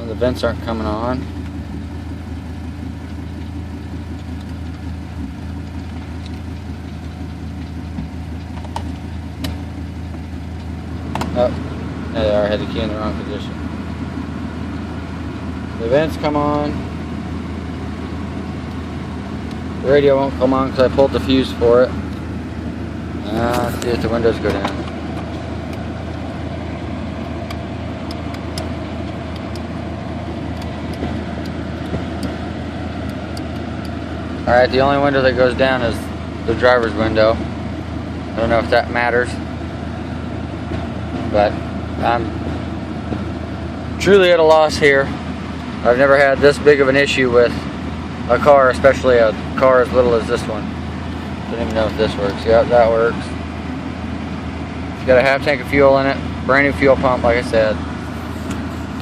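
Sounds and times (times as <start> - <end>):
blower fan hum: 0.0 - 59.0
low mechanical drone: 0.0 - 59.0.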